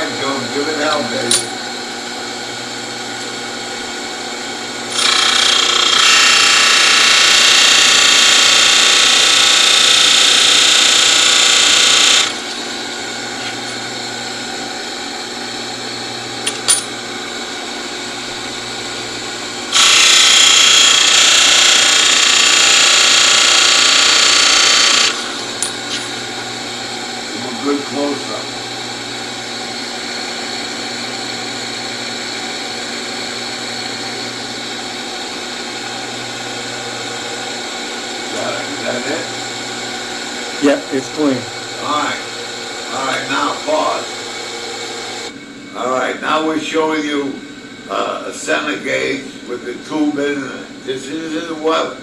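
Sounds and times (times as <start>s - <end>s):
sander running: 0.0s - 52.0s
metal tool grinding on sander: 4.9s - 13.9s, 19.7s - 28.8s.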